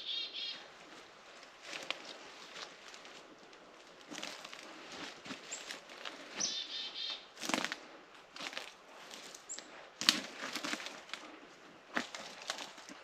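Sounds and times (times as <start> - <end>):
bird chirping: 0.0 - 0.6, 6.3 - 7.3
footsteps crunching in leaf litter: 1.4 - 11.3
buzzy bird call: 6.4 - 7.3.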